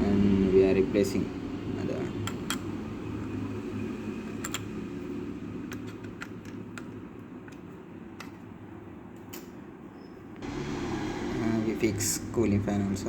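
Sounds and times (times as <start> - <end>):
steady low hum: 10.3 - 13.0.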